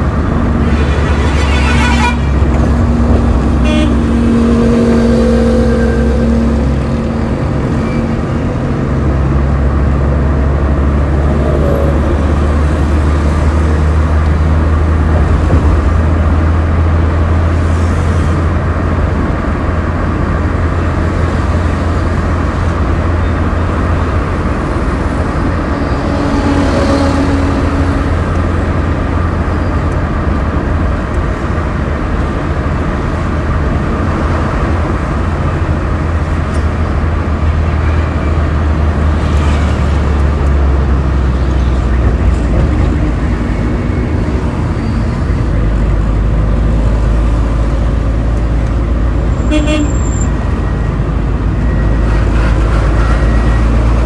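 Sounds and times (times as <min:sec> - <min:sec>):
motor traffic rumble: 0:00.0 - 0:54.0
car horn: 0:00.4 - 0:08.3, 0:24.6 - 0:28.7, 0:49.4 - 0:50.4, 0:51.9 - 0:54.0.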